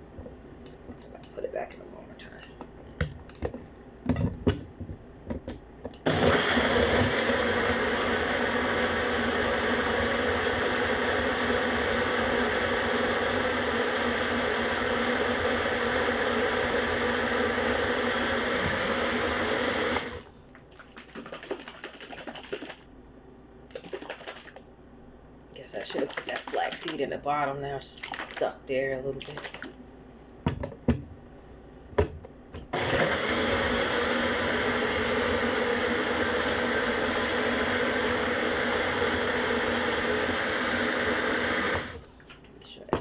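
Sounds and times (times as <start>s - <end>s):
blender running: 6.1s - 20.2s, 32.7s - 42.0s.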